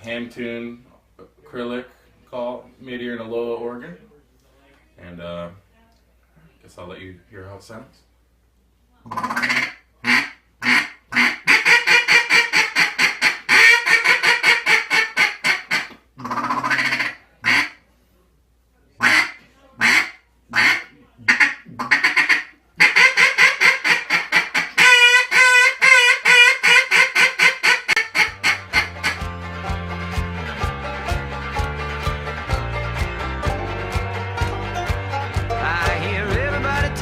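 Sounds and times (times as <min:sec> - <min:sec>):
duck call quacks: 0:09.1 - 0:17.8, 0:19.0 - 0:29.3.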